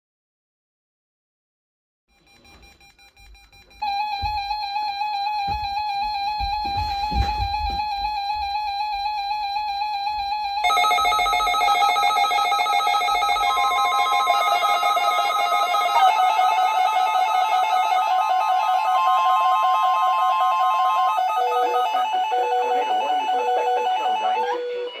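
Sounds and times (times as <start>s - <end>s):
steady warning alarm tone: 2.1s - 25.0s
overlapping pulsing beeps: 2.2s - 25.0s
weather radio alarm tone: 3.6s - 25.0s.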